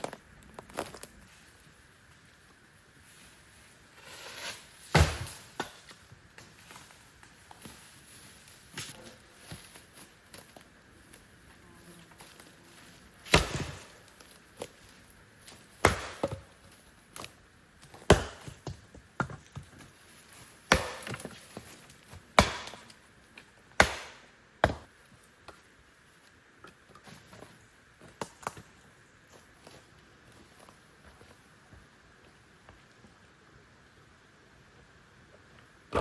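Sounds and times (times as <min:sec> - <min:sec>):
axe chopping wood: 0:04.9 - 0:05.9, 0:13.2 - 0:14.0, 0:15.8 - 0:16.6, 0:17.9 - 0:19.6, 0:20.7 - 0:21.6, 0:22.2 - 0:23.0, 0:23.8 - 0:24.9.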